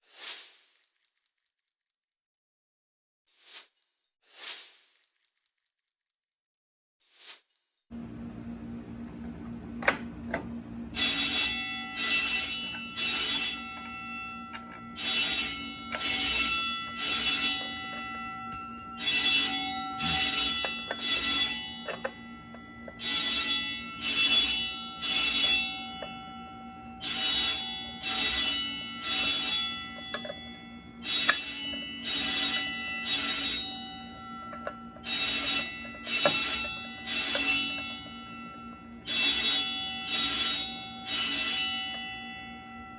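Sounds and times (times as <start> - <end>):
steady low hum: 7.9 - 42.9
fire alarm bell ringing: 9.8 - 42.9.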